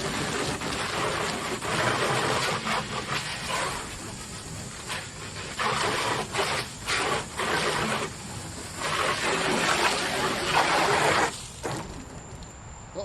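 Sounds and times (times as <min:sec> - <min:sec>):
hose water spraying on metal: 0:00.0 - 0:12.3.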